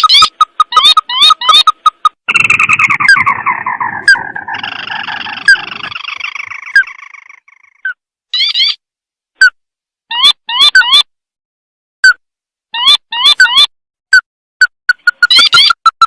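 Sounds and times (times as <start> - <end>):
crake call with chattering trill: 0.0 - 8.8.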